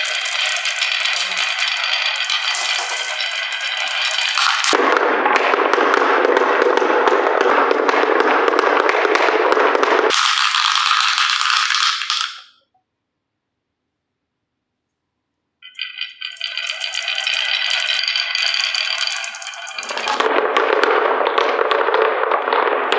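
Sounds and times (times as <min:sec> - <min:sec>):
marbles rattling down marble run: 0:00.0 - 0:04.8, 0:10.1 - 0:12.6, 0:15.7 - 0:20.3.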